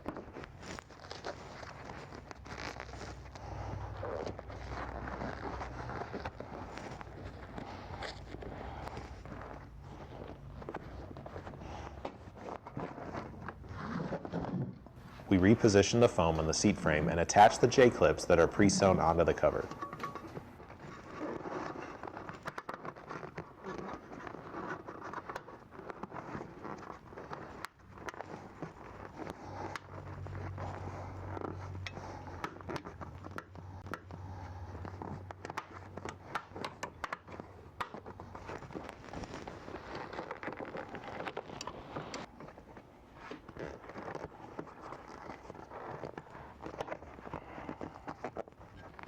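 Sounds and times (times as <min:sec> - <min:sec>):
scraping: 0:00.0 - 0:33.8
rustling: 0:00.0 - 0:49.0
low steady hum: 0:14.4 - 0:21.2.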